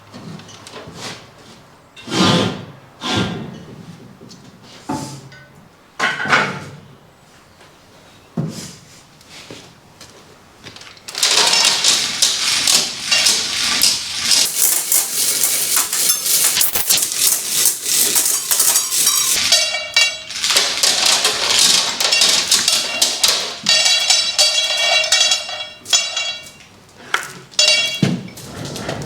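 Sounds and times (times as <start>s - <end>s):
metallic scraping and clattering: 11.0s - 26.6s, 27.5s - 29.0s.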